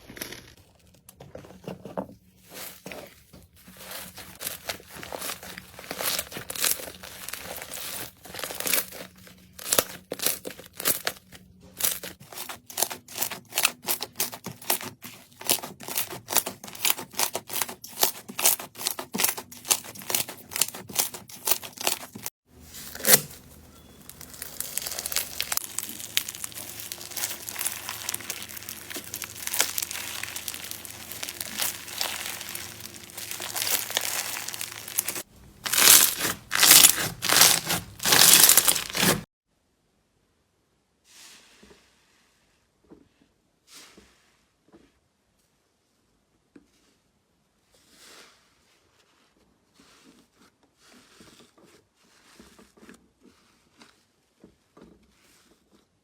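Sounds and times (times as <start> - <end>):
slime crackling and popping: 3.7 - 11.2, 11.8 - 22.3, 22.9 - 39.3.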